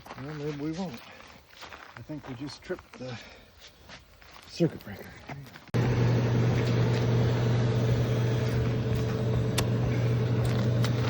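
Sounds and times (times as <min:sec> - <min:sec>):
electric motor droning: 0:05.8 - 0:11.0.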